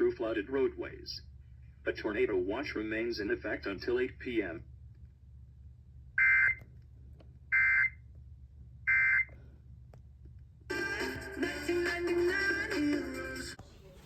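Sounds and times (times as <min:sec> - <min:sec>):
music: 0:10.7 - 0:14.0.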